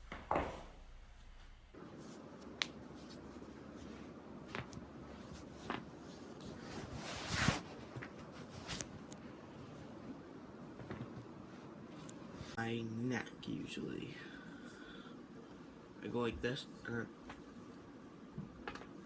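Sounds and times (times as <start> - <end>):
clothing rustling: 1.8 - 12.6.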